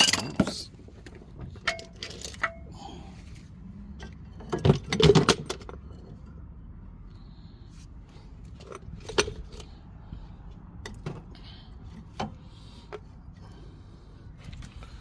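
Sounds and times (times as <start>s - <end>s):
metal tools clinking: 0.0s - 0.7s, 1.5s - 2.8s
steady low rumble: 5.6s - 15.0s.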